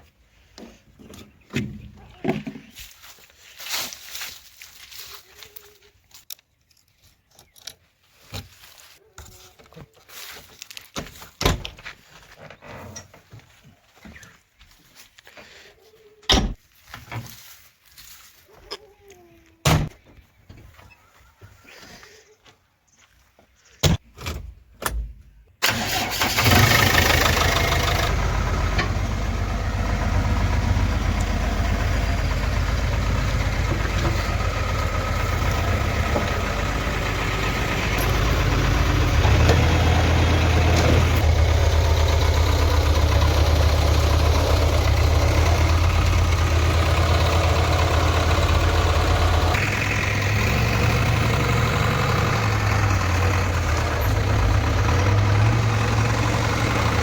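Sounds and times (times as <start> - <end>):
diesel engine starting and idling: 25.6 - 57.0.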